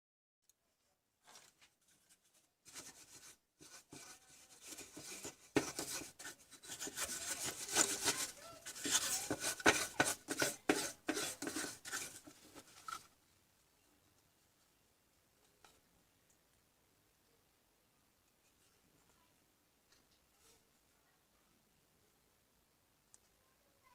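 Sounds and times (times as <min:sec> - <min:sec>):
scraping and rubbing: 0:01.2 - 0:13.1.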